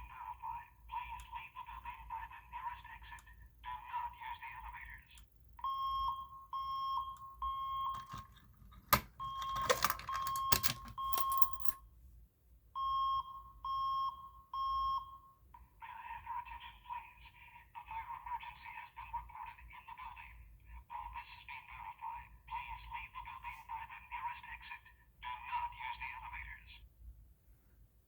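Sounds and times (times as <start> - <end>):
recorded voice message: 0.0 - 5.3, 7.8 - 11.7, 15.6 - 26.8
fire alarm beeps: 5.6 - 8.4, 9.1 - 11.8, 12.8 - 15.4.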